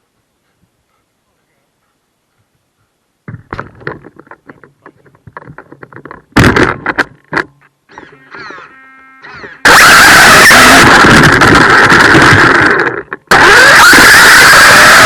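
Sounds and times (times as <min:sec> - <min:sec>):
toy car clattering and knocking: 0:03.4 - 0:07.6.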